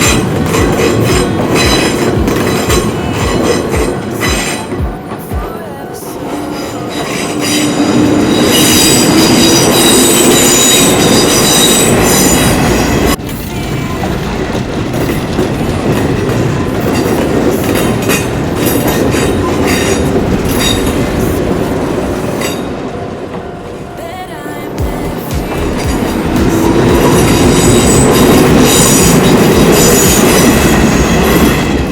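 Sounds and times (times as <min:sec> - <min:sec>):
electric train passing: 0:00.0 - 0:31.9
train wheels squealing: 0:06.5 - 0:13.2.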